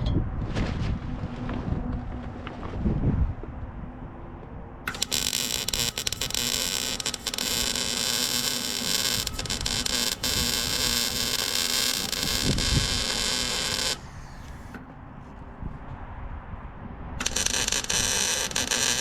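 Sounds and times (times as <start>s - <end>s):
wind buffeting microphone: 0.0s - 4.9s, 12.1s - 13.1s, 14.0s - 17.2s
welder arc hissing: 4.9s - 14.8s, 17.2s - 19.0s.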